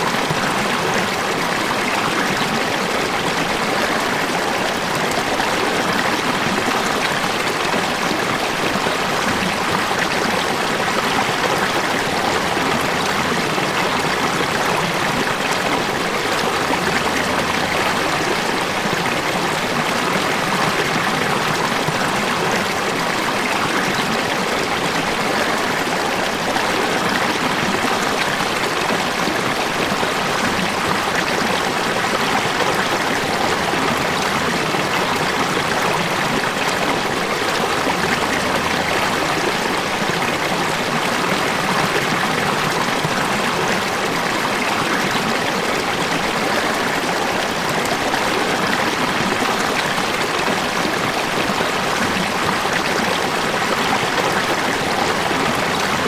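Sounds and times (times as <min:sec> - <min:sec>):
falling water rushing and splashing: 0:00.0 - 0:56.0.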